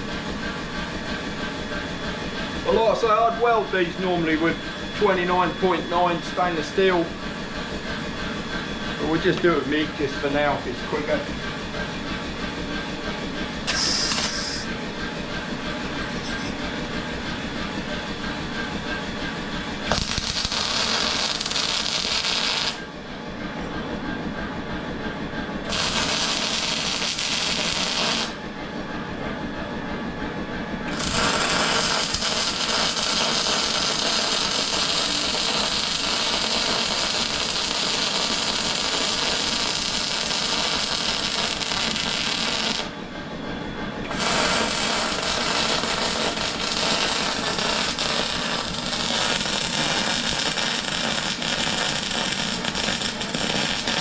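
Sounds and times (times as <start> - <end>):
welder arc crackling and buzzing: 13.7 - 14.7, 19.8 - 22.9, 25.6 - 28.4, 30.9 - 43.0, 44.1 - 54.0.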